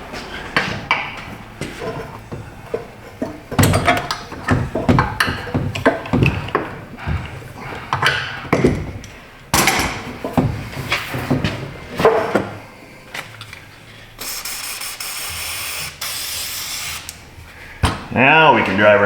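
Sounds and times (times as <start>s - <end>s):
metal clanks and knocks: 0.6s - 12.6s
aerosol can spraying: 14.2s - 17.1s.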